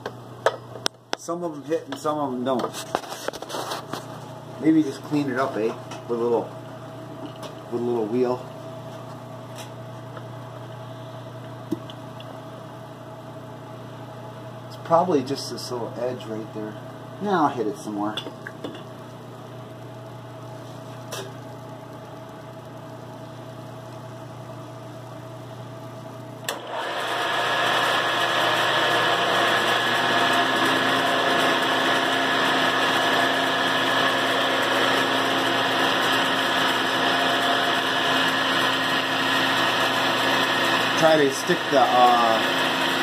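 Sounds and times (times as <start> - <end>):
low steady hum: 0.0 - 26.5
power tool motor spinning: 26.5 - 43.0.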